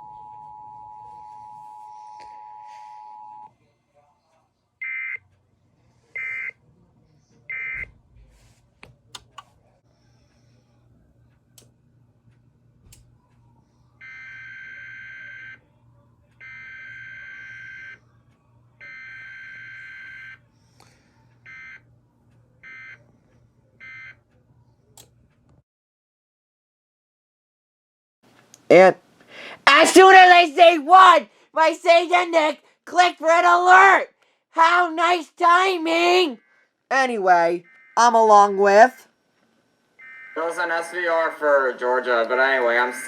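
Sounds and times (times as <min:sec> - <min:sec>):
low steady hum: 0:00.0 - 0:04.1.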